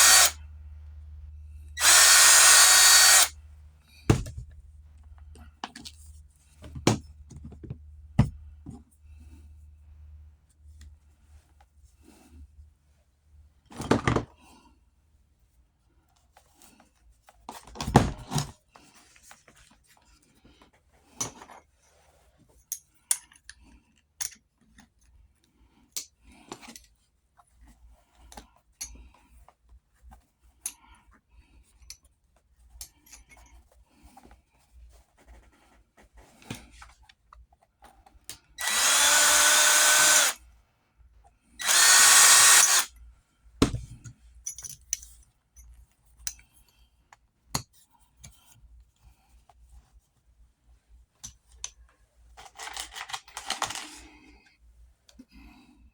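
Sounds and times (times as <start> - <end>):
power drill running: 0.0 - 0.4, 1.8 - 3.3, 38.6 - 40.4, 41.6 - 42.9.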